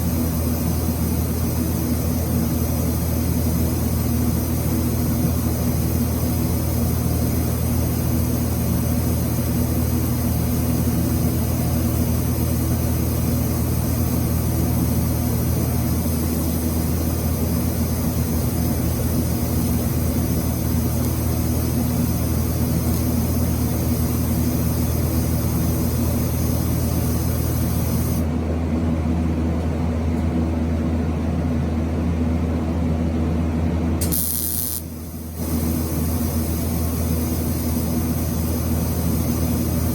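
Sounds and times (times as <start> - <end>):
welder hiss: 0.0 - 28.3, 34.0 - 39.9
welder electrical hum: 0.0 - 39.9.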